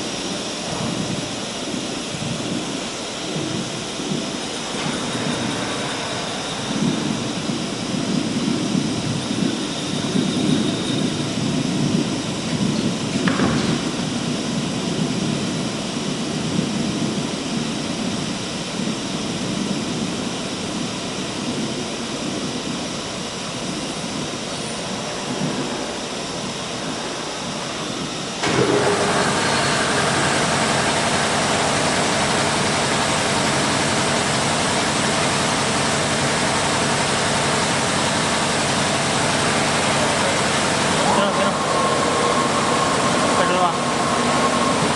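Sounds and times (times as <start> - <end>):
rumbling machine noise: 0.0 - 44.9
steady whooshing noise: 38.9 - 44.9.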